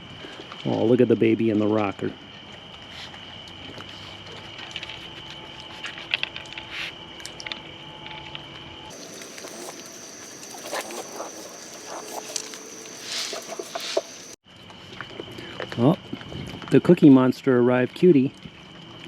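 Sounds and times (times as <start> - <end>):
raccoons clicking and rustling toys: 2.3 - 17.1.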